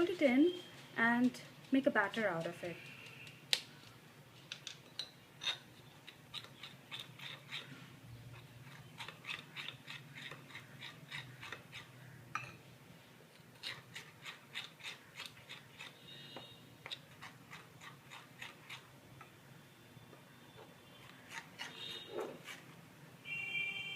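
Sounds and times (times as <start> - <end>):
spatula scraping against cup: 5.4 - 12.5, 13.5 - 18.9, 20.9 - 22.7.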